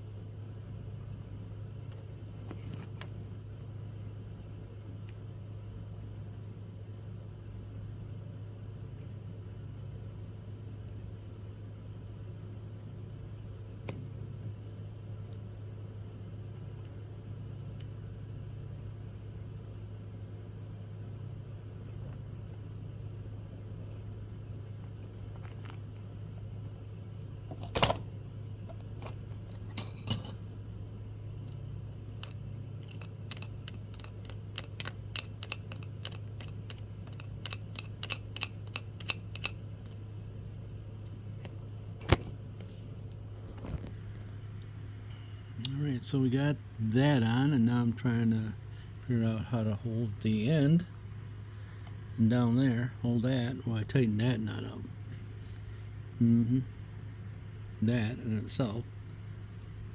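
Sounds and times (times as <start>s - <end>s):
steady low hum: 0.0s - 59.9s
metallic clinks: 29.0s - 30.4s, 42.0s - 42.4s.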